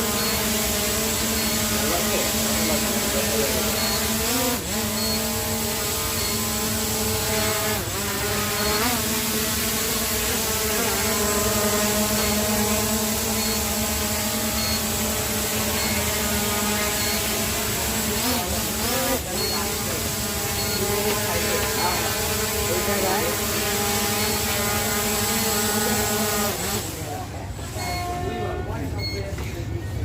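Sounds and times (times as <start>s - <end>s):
drone propellers whirring: 0.0s - 28.1s.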